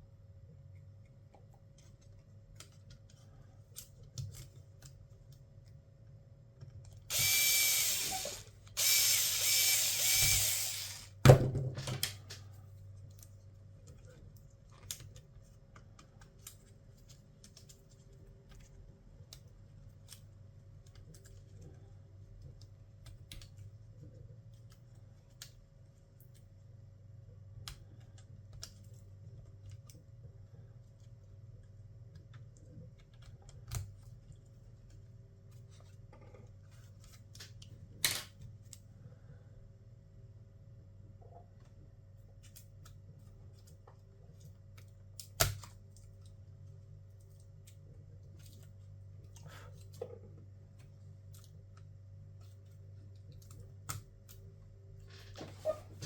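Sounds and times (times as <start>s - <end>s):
electric screwdriver running: 7.1s - 11.2s.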